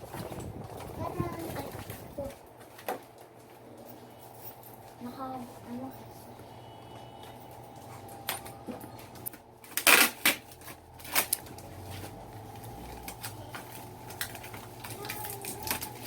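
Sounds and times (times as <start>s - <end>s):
packaging rustling and crinkling: 9.1s - 16.0s.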